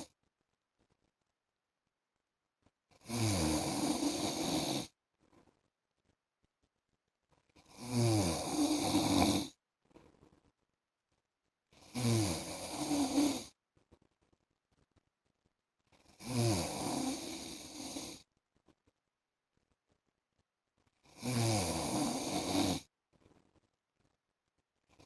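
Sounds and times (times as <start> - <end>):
man snoring: 3.0 - 4.9, 7.7 - 9.6, 11.8 - 13.5, 16.2 - 18.2, 21.1 - 22.9.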